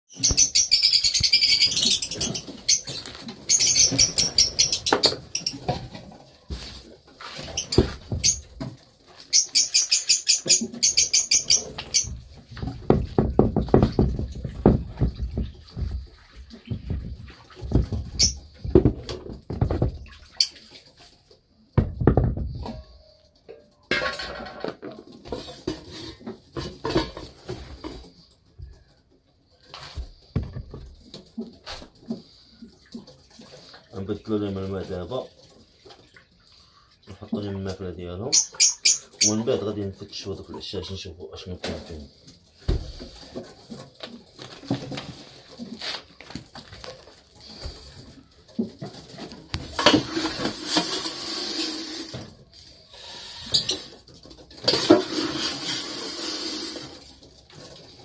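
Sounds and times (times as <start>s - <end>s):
parrots chattering: 0.1s - 5.7s, 9.3s - 12.2s, 38.3s - 39.4s
birds chirping: 0.1s - 5.9s, 7.4s - 14.5s, 38.2s - 39.8s
soft knocks: 12.6s - 20.1s
cage dishes clattering: 21.8s - 28.2s.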